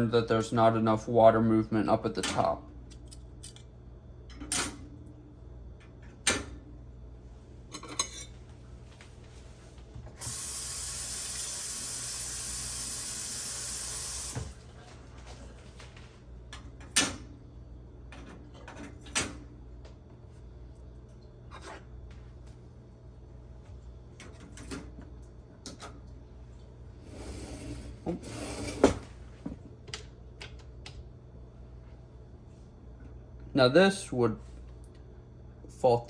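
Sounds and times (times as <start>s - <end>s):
kitchen faucet running: 10.2s - 14.6s.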